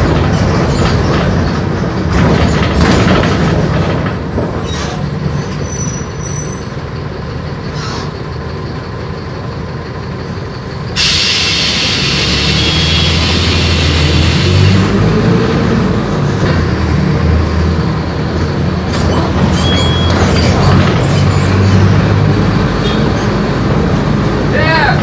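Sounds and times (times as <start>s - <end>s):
bus body rattling: 0.0s - 15.1s, 16.1s - 24.5s
bus diesel engine running: 0.0s - 25.0s
loud steady hiss: 11.0s - 14.8s.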